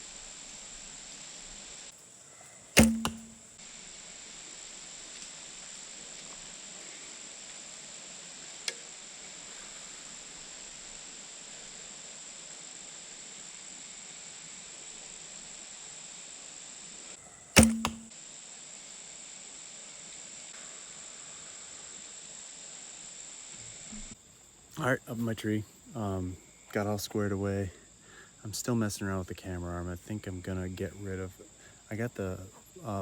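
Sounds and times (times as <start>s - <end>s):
arrow striking target: 2.8s - 3.4s, 17.6s - 18.1s
bowstring snap: 2.8s - 3.4s, 17.6s - 18.1s.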